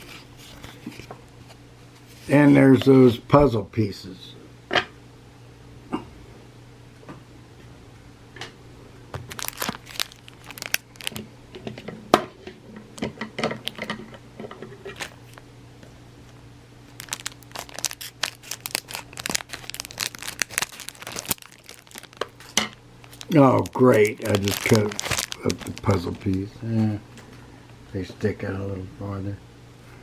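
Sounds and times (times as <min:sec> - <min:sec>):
wrapper crinkling and tearing: 0:09.1 - 0:11.3, 0:13.0 - 0:13.9, 0:14.9 - 0:15.4, 0:16.9 - 0:26.6.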